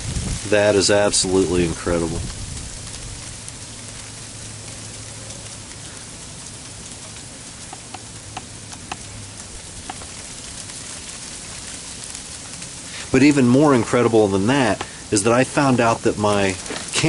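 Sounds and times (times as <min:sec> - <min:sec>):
freezing rain pattering: 0:00.0 - 0:17.0
sharp ticks: 0:06.4 - 0:09.1, 0:09.8 - 0:10.7.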